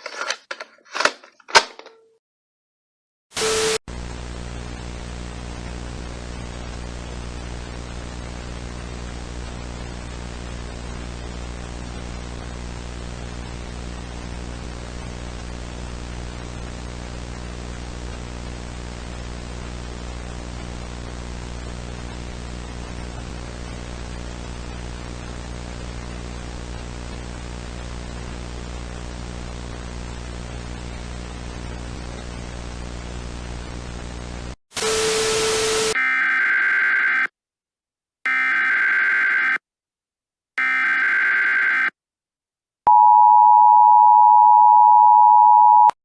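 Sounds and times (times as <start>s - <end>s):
hissing static: 3.4s - 36.0s
loud static burst: 3.4s - 36.0s.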